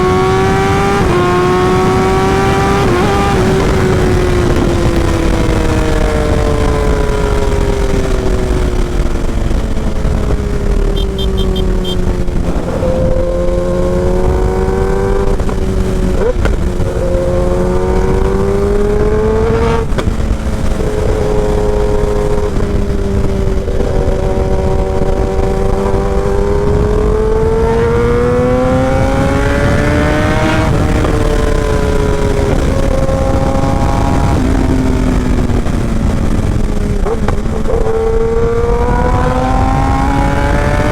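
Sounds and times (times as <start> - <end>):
motorcycle engine revving: 0.0 - 40.9
wind rushing on microphone: 0.0 - 40.9
short high beeps: 10.9 - 12.0.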